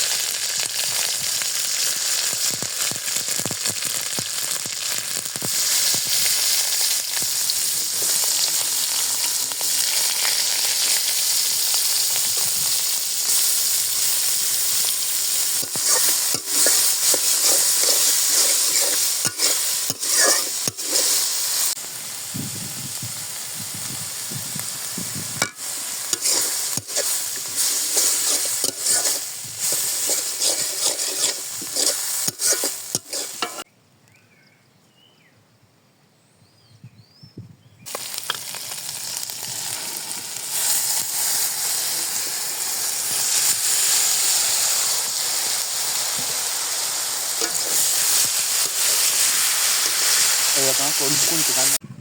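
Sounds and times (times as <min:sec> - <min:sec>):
food sizzling in a pan: 0:00.0 - 0:33.7, 0:37.9 - 0:51.8
spatula scraping a pan: 0:13.3 - 0:21.8, 0:25.4 - 0:33.6, 0:47.3 - 0:51.6.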